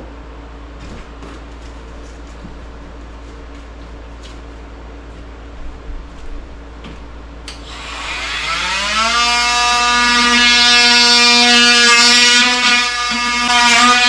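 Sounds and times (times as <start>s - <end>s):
power tool motor whine: 7.5s - 14.0s.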